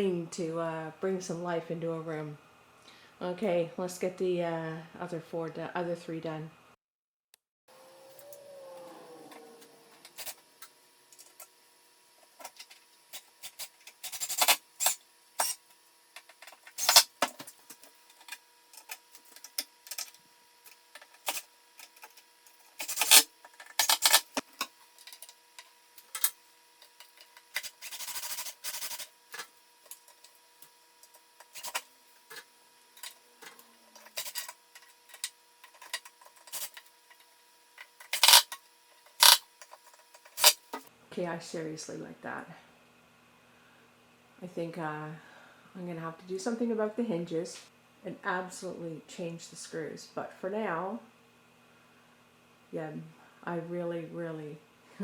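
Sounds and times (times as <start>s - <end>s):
metal hardware clicks and scrapes: 12.4s - 15.6s, 16.2s - 20.2s, 20.9s - 26.4s, 38.0s - 38.6s, 39.2s - 40.8s.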